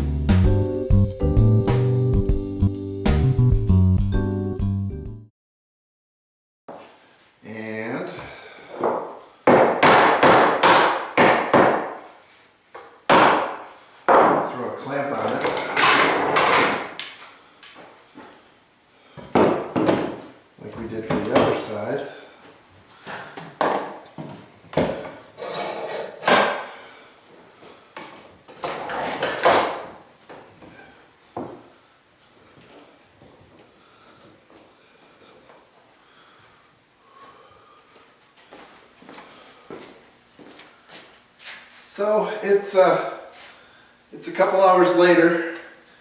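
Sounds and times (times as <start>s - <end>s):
hammer striking wood: 8.8s - 12.0s, 13.1s - 14.5s
metal sliding against wood: 25.4s - 26.5s.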